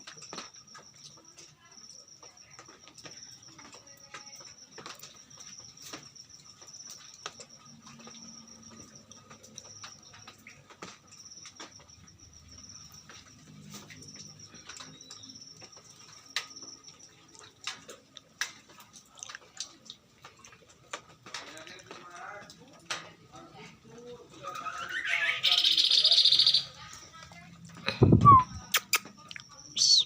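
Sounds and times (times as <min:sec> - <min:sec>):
high pulsed insect-like trill: 0:00.0 - 0:17.2, 0:24.6 - 0:27.5
birds tapping and clicking: 0:00.0 - 0:28.0.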